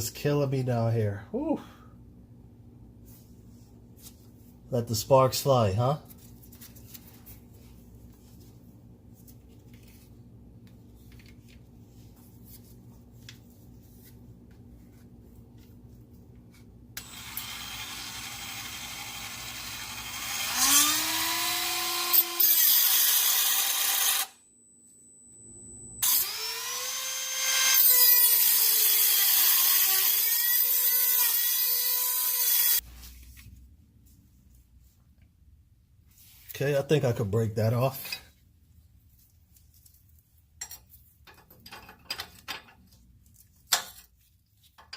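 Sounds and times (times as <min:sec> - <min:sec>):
rotary tool grinding metal: 0:17.0 - 0:24.3, 0:26.0 - 0:32.8.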